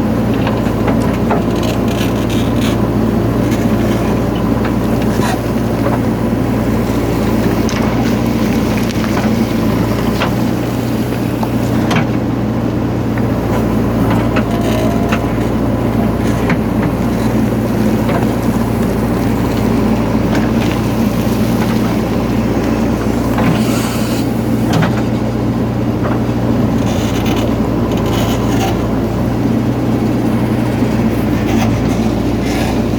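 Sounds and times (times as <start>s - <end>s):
diesel engine running under load: 0.0s - 32.9s
bucket knocking and scraping earth: 12.9s - 25.2s.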